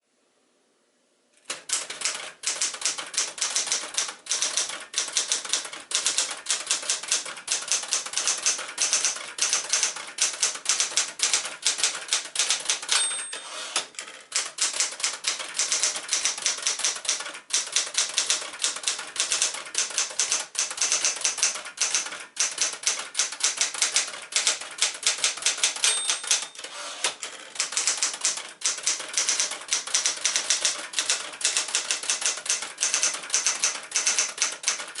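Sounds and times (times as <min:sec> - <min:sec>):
typewriter keys clattering: 0:01.5 - 0:13.5, 0:14.3 - 0:26.7, 0:27.6 - 0:35.0
typewriter bell ringing: 0:12.9 - 0:13.8, 0:25.5 - 0:27.0.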